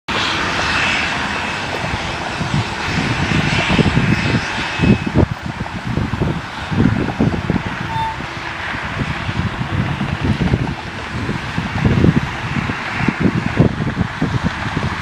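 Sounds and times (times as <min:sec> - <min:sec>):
airliner engines running: 0:00.1 - 0:15.0
faint high whine: 0:07.8 - 0:08.8.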